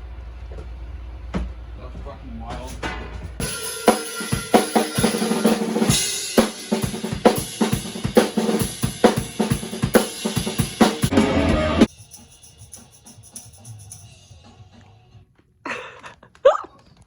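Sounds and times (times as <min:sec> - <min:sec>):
drum kit playing rock beat: 0:03.1 - 0:14.5.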